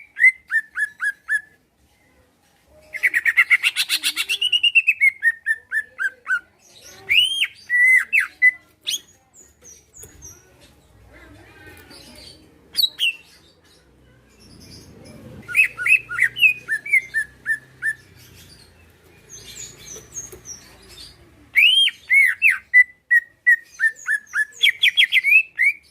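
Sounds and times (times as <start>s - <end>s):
bird singing whistled phrases: 15.5s - 18.1s, 21.6s - 25.9s.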